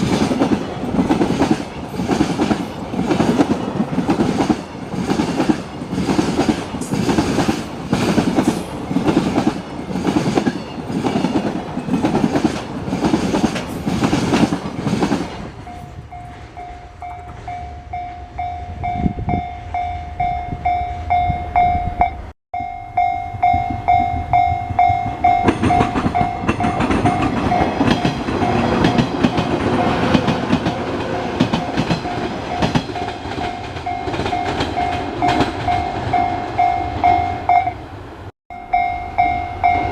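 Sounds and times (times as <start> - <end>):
train wheels clattering over rail joints: 0.0 - 16.3, 25.3 - 36.2
approaching train: 0.0 - 39.9
level crossing warning bell ringing: 15.6 - 30.2, 31.6 - 37.8, 38.5 - 39.9.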